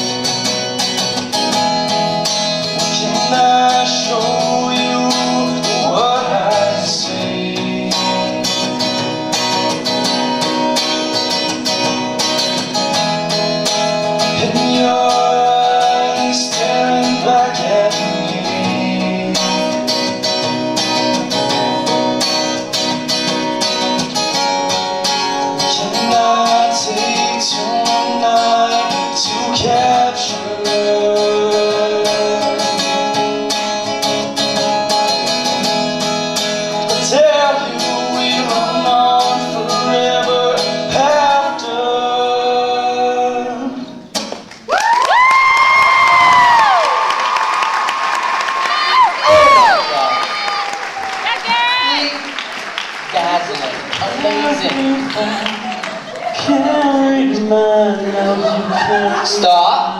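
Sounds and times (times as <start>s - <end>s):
acoustic guitar chords: 0.0s - 44.7s, 45.6s - 59.9s
person singing: 2.8s - 8.6s, 14.2s - 20.1s, 25.5s - 33.2s, 36.9s - 44.0s, 54.0s - 59.9s.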